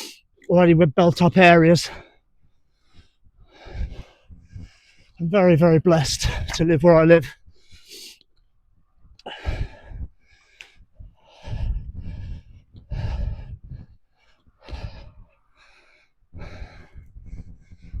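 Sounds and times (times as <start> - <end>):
cyclist breathing hard: 1.9 - 5.2, 7.4 - 8.3, 9.1 - 18.0
wind buffeting microphone: 9.0 - 10.2, 10.8 - 14.0, 16.3 - 18.0.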